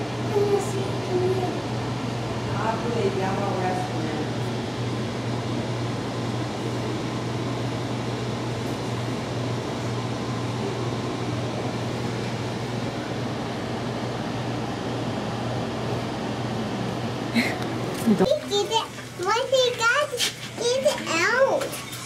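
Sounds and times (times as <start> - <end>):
ventilation system hum: 0.0 - 22.0.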